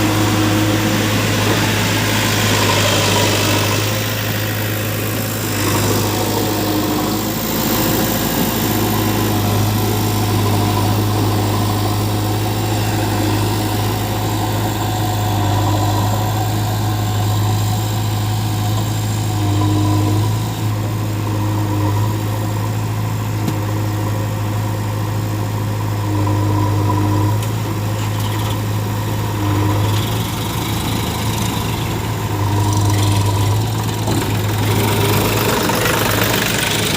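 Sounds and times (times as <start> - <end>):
diesel engine idling: 0.0 - 36.9.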